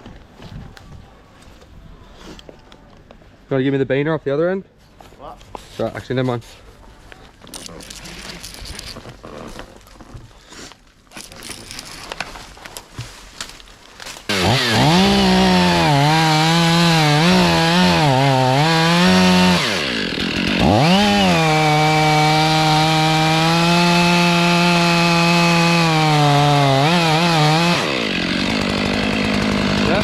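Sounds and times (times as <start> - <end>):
chainsaw running at high revs: 14.3 - 30.0.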